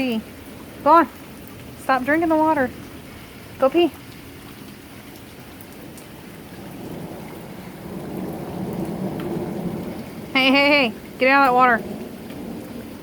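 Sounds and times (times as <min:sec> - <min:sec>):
steady rain falling: 0:00.0 - 0:13.0
low roll of thunder: 0:05.8 - 0:13.0.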